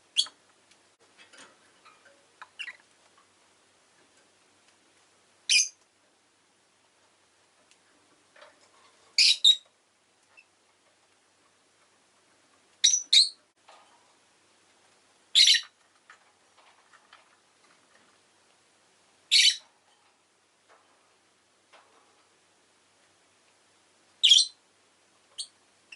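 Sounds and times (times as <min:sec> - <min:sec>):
faint background noise: 0:00.0 - 0:25.9
lovebirds chirping shrilly: 0:05.5 - 0:05.8, 0:09.2 - 0:09.6, 0:12.8 - 0:13.4, 0:15.4 - 0:15.7, 0:19.3 - 0:19.6, 0:24.2 - 0:24.6.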